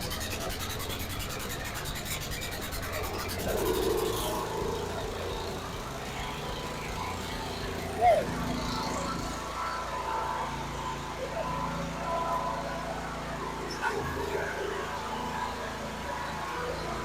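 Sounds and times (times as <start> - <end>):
starter rasping against flywheel: 0.0 - 9.4
lawn mower engine running: 0.0 - 9.9.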